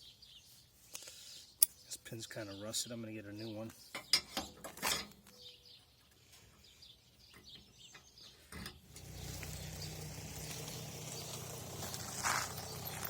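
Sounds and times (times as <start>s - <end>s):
faint bird chirps: 5.2s - 8.5s.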